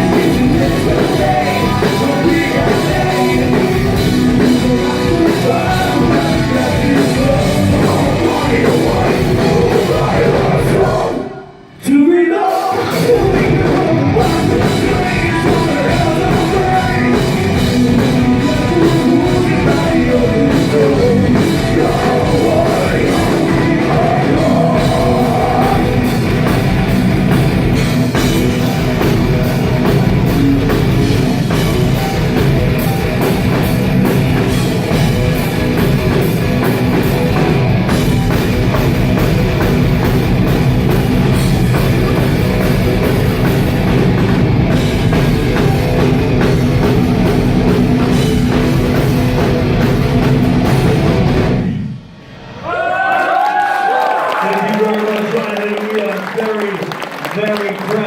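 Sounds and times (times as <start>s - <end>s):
pounding drum kit: 0.0s - 11.4s, 12.4s - 54.2s
person singing: 0.0s - 26.5s
distorted guitars: 0.0s - 53.2s.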